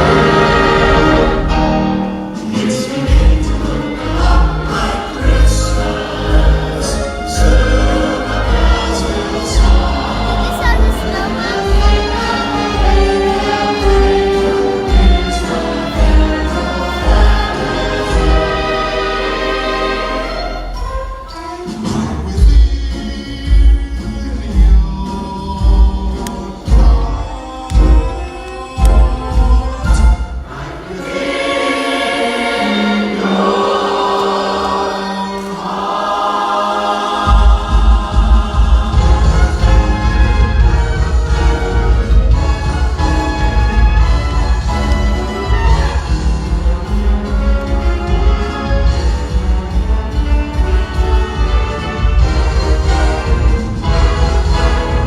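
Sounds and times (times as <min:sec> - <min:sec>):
choir singing with accompaniment: 0:00.0 - 0:55.0
steady low beat: 0:37.2 - 0:55.0.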